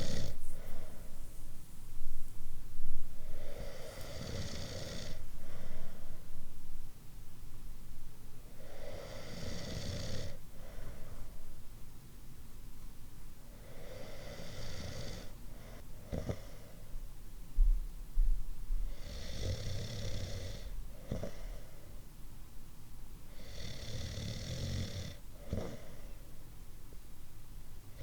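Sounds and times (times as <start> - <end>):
person snoring: 0.0 - 0.4, 3.4 - 5.2, 8.6 - 10.4, 13.8 - 15.3, 23.4 - 25.8.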